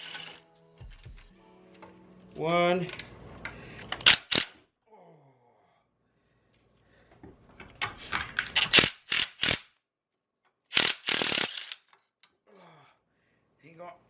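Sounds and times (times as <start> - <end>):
ratchet wrench clicking: 10.7 - 11.9.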